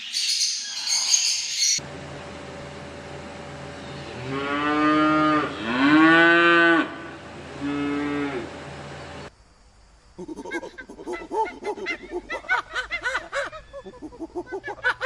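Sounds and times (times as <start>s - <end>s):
cow mooing: 4.2s - 8.5s
faint steady hum: 6.8s - 15.0s.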